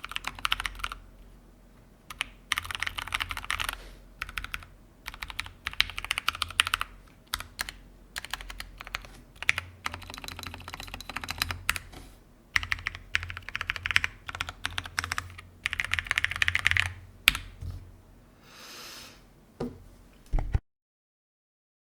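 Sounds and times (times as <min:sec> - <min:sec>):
typing on mechanical keyboard: 0:00.0 - 0:01.0, 0:02.1 - 0:11.9, 0:12.6 - 0:17.5.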